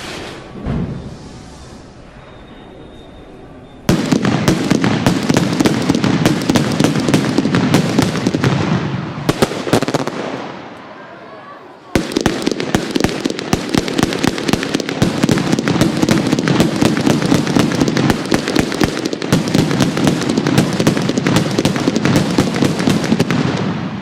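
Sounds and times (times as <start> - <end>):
firecrackers crackling: 3.9 - 10.9, 11.9 - 24.0.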